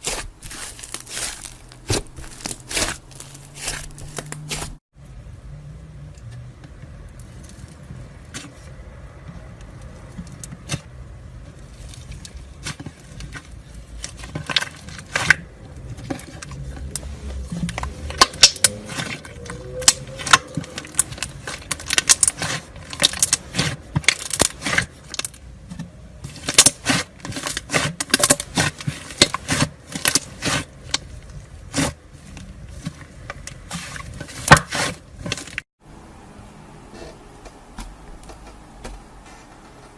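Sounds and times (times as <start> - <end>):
slime popping and crackling: 0.0 - 4.8, 16.9 - 25.4.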